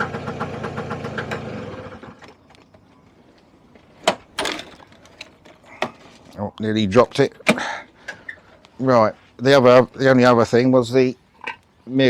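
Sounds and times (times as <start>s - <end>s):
scooter engine idling: 0.0s - 2.2s.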